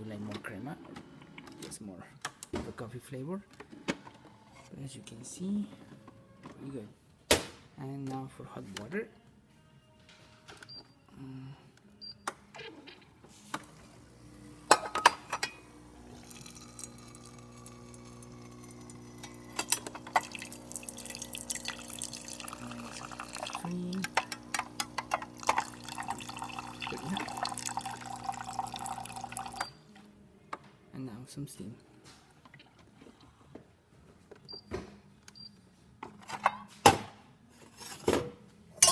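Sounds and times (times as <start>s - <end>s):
espresso machine pump humming: 13.6s - 29.7s
water splashing into a cup: 19.5s - 29.7s.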